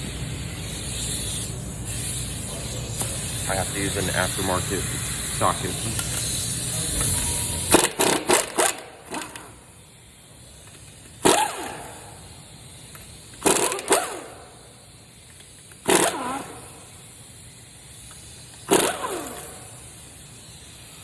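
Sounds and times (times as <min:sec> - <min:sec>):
hiss: 0:00.0 - 0:21.0.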